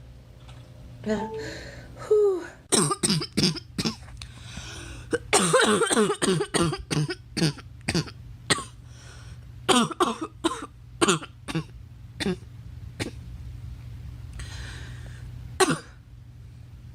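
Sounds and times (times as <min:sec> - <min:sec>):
girl coughing: 0:02.7 - 0:04.0, 0:05.2 - 0:08.8, 0:09.7 - 0:12.4, 0:15.6 - 0:16.0.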